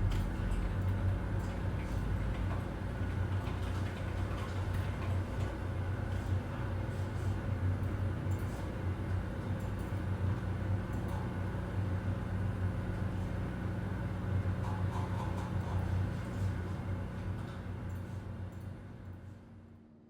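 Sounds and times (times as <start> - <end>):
steady low hum: 0.0 - 3.4.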